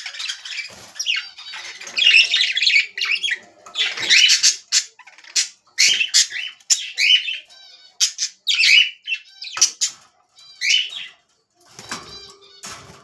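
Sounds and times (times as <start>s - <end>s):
parrots squawking and chirping: 0.0s - 13.0s.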